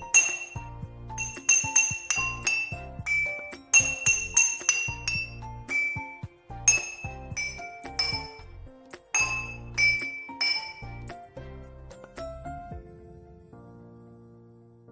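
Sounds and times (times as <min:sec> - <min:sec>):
glass clinking: 0:00.0 - 0:08.6, 0:09.2 - 0:11.1
soft background music: 0:00.0 - 0:14.9.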